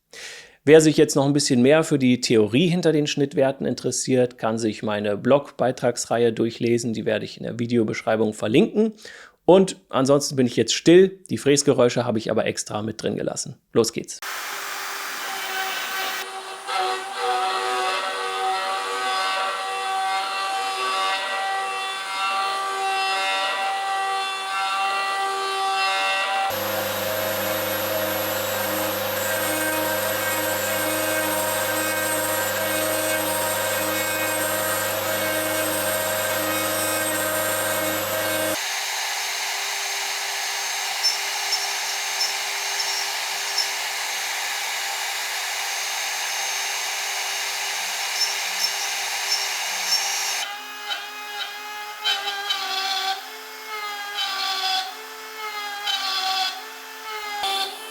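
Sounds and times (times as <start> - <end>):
cutter cutting material: 14.2 - 57.9
milling spindle whine: 14.3 - 19.8, 26.5 - 50.4.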